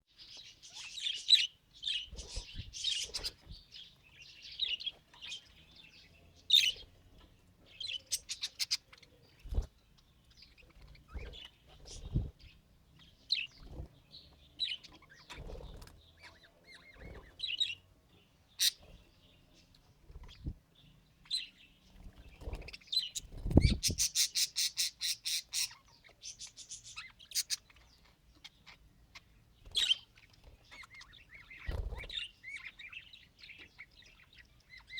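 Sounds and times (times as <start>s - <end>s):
budgerigar chirping: 7.8s - 8.9s, 18.6s - 18.8s, 23.0s - 34.9s.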